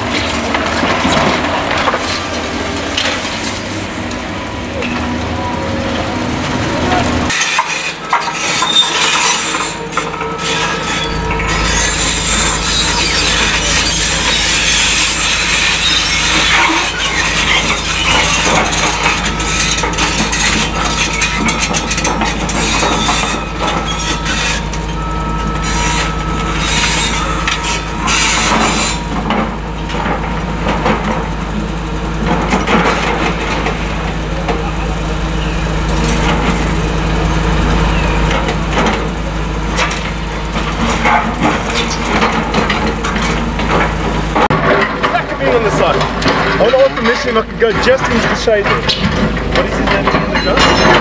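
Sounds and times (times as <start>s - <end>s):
excavator bucket scraping rubble: 0.0s - 3.7s, 6.7s - 36.8s, 37.9s - 51.0s
diesel engine running: 0.0s - 51.0s
metallic squeals: 7.3s - 29.8s, 49.9s - 51.0s.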